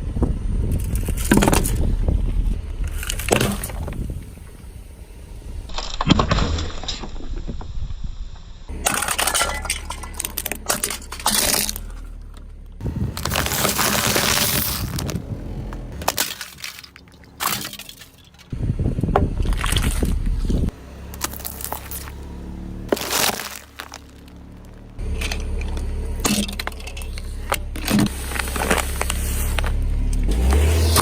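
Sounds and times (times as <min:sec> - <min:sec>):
brittle objects crushed under tyre: 0:00.7 - 0:02.2, 0:02.8 - 0:04.1, 0:08.7 - 0:18.5, 0:19.2 - 0:31.0.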